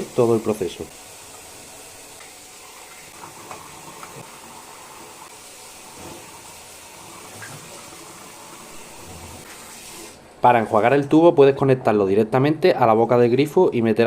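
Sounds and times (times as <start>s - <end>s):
tap water running into sink: 0.0s - 10.2s.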